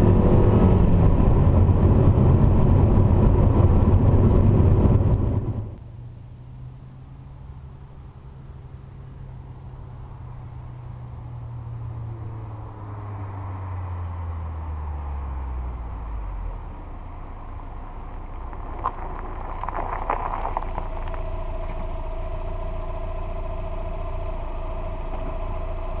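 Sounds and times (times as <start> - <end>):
car engine idling: 15.4 - 26.0.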